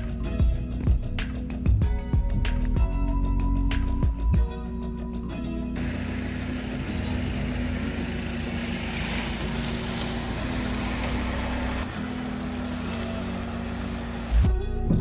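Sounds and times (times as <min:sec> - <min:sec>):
four-cylinder engine running: 0:05.8 - 0:14.6.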